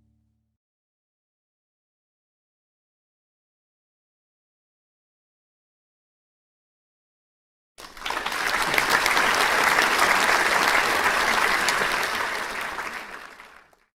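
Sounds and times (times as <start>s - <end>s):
crowd applauding: 7.8s - 13.9s.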